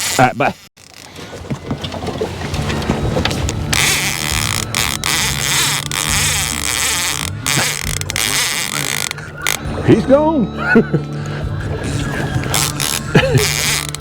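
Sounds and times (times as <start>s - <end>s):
electric motor hum: 2.6s - 10.0s.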